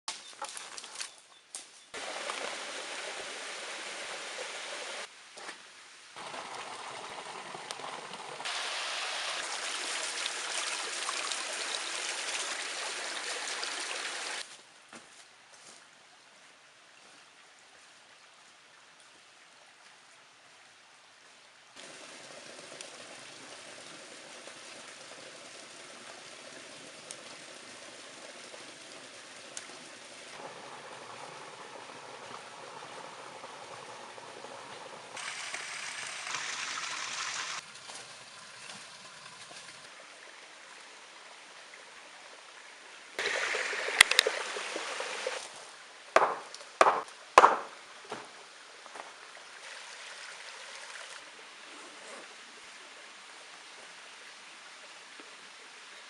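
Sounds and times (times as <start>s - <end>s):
water rushing: 2.0s - 5.1s, 6.2s - 14.4s, 21.8s - 51.7s.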